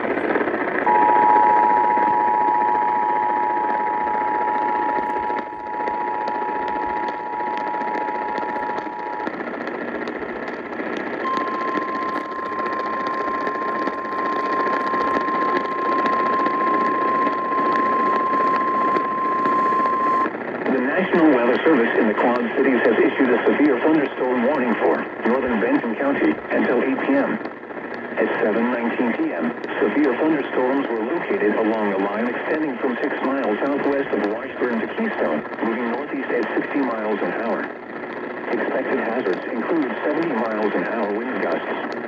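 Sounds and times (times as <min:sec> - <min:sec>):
steady hiss with crackles: 0:00.0 - 0:42.0
two-tone alert signal: 0:11.3 - 0:20.2.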